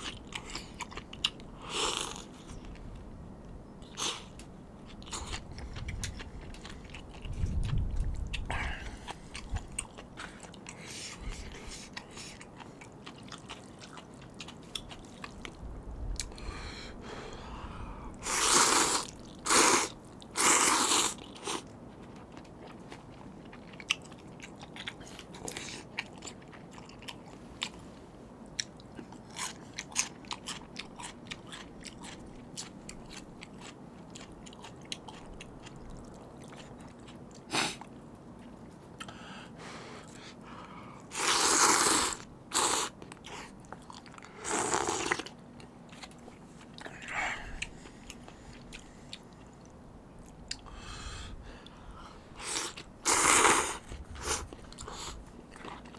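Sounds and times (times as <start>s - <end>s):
wet chewing: 0.0s - 3.0s, 3.8s - 15.6s, 18.1s - 27.8s, 28.5s - 39.3s, 40.0s - 50.8s, 52.4s - 55.9s
slurping noodles: 18.2s - 21.6s, 41.1s - 43.0s, 44.4s - 45.3s, 52.4s - 55.2s.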